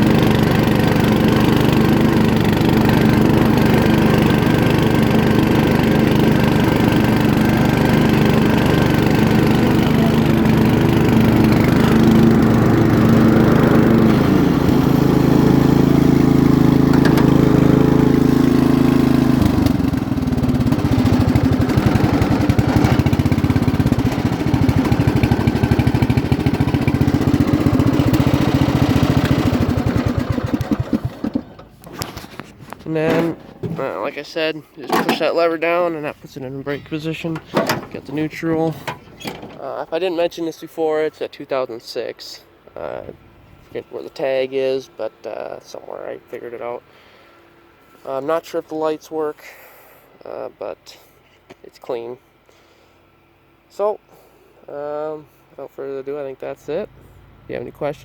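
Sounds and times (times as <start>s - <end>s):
lawn mower engine running: 0.0s - 40.3s.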